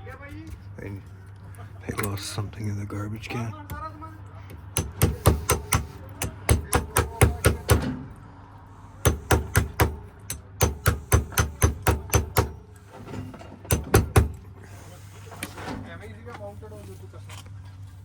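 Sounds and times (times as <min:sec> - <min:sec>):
rapid sharp knocks: 0:04.7 - 0:08.0, 0:09.0 - 0:12.8, 0:13.7 - 0:14.5.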